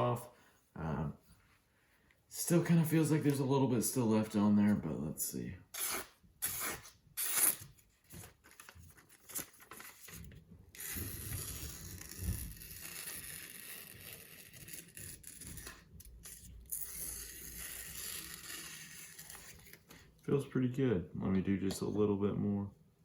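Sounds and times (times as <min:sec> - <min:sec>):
knife slicing paper: 0:05.7 - 0:10.2, 0:10.8 - 0:19.9.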